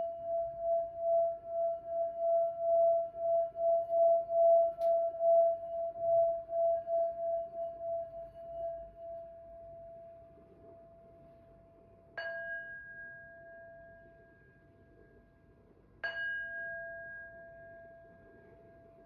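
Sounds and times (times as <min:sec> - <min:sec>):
singing bowl ringing: 0:00.0 - 0:10.2.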